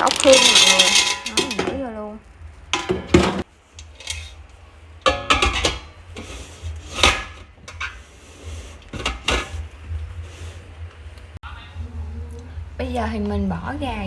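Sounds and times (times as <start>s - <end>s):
shells clattering on metal pot: 0.0s - 1.9s.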